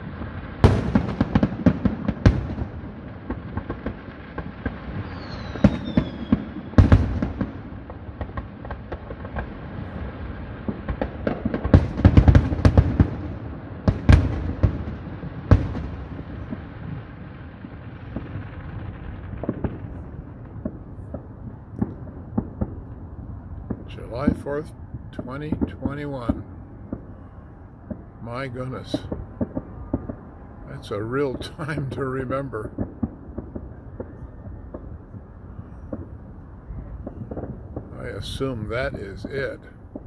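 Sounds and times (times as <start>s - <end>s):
fireworks bangs and crackles: 0.0s - 40.0s
falling firework whistle: 4.9s - 7.2s.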